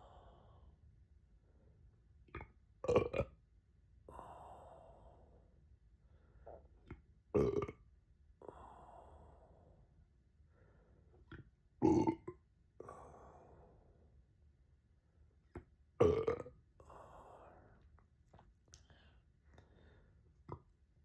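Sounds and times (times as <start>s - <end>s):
person burping: 2.8s - 3.3s, 7.4s - 7.8s, 11.8s - 12.4s, 16.0s - 16.5s.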